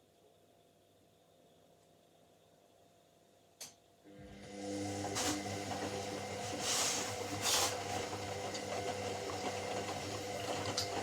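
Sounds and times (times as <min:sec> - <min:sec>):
washing machine motor hum: 0:04.0 - 0:11.0
washing machine rushing whooshes: 0:04.4 - 0:11.0.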